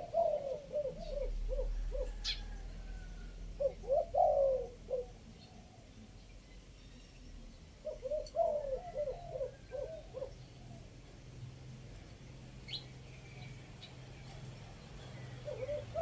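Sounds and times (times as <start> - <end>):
dove cooing: 0.0 - 6.1, 7.8 - 11.0, 15.1 - 16.0.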